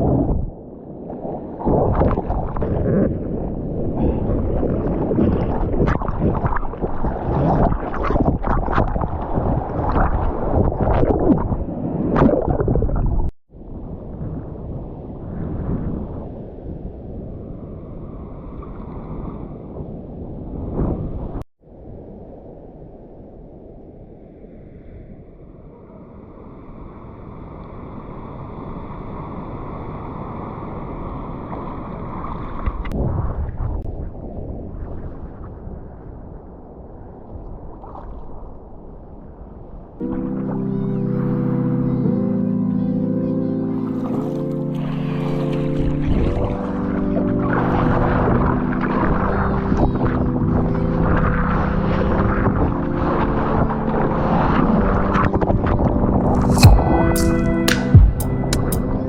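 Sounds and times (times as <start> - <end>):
wind buffeting microphone: 0.0 - 24.2, 24.9 - 40.0
sea water sloshing and splashing: 1.0 - 13.3, 43.8 - 56.6
sharp knock: 56.5 - 58.8.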